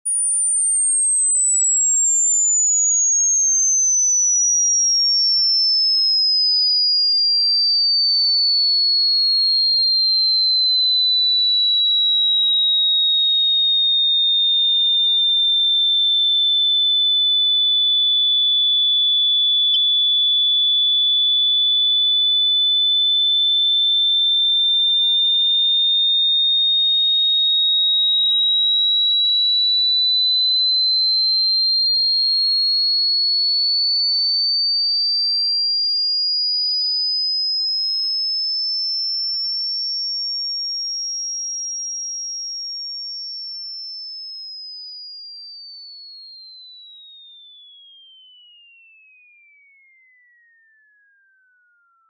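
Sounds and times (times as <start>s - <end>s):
high-pitched electronic sine tone: 0.1s - 11.8s.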